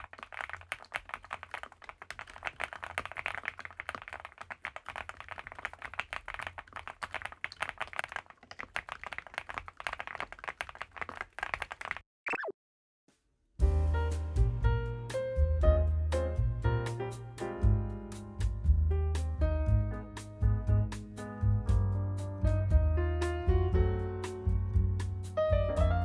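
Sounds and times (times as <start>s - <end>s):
mechanical keyboard typing: 0.0s - 12.0s.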